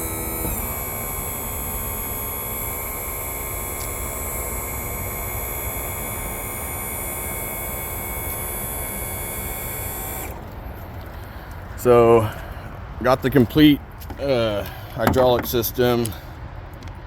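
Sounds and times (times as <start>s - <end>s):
electric pump motor whining: 0.0s - 12.7s.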